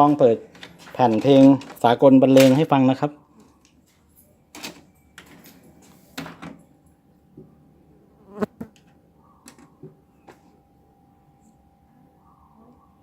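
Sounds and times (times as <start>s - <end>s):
faint steady hum: 3.2s - 13.0s.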